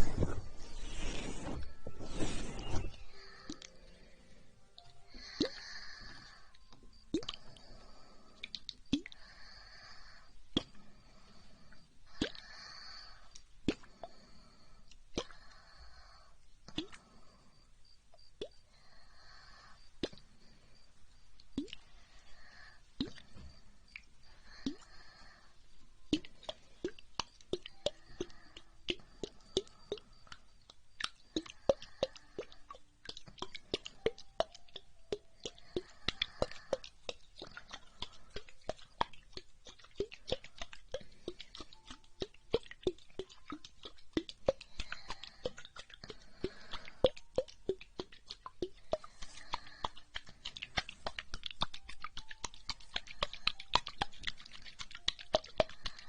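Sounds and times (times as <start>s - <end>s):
soft breathing: 0.0s - 56.0s
wet mouth clicks and smacks: 4.8s - 7.8s, 8.4s - 9.5s, 10.5s - 10.9s, 12.1s - 12.6s, 13.3s - 14.0s, 20.0s - 20.4s, 21.3s - 23.3s, 23.9s - 25.3s, 26.1s - 56.0s.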